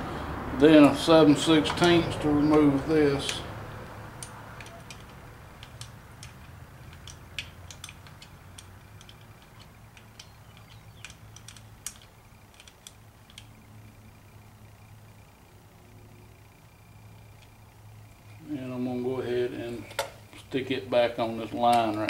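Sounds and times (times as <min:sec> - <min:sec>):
steady low hum: 0:00.0 - 0:22.0
wrench metal clicks: 0:00.8 - 0:03.5, 0:04.2 - 0:13.6.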